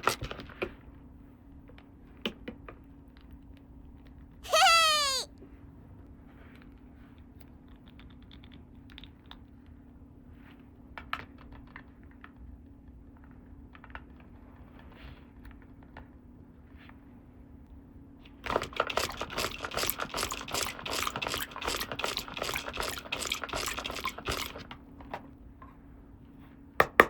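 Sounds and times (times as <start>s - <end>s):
squeaky toy squeak: 4.5s - 5.3s.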